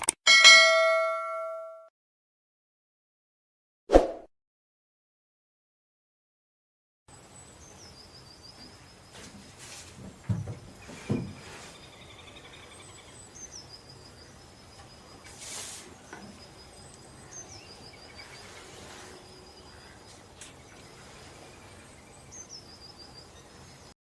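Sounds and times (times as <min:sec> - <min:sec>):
faint outdoor background noise: 0:07.1 - 0:24.0.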